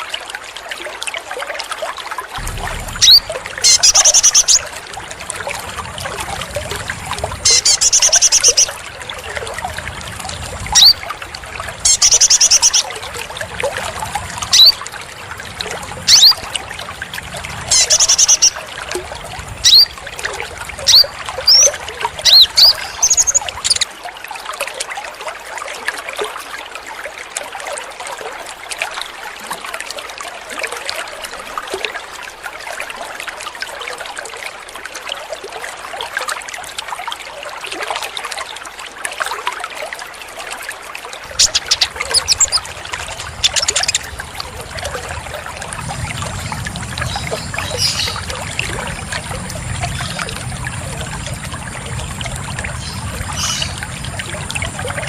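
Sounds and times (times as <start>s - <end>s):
water trickling: 0.0s - 55.0s
rapid high chirps: 2.4s - 4.7s, 41.3s - 44.1s
low hum: 2.4s - 23.8s, 41.2s - 55.0s.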